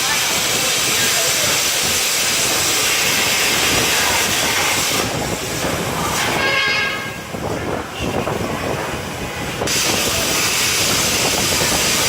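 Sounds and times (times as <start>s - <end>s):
plasma torch cutting steel: 0.0s - 6.6s, 9.6s - 12.0s.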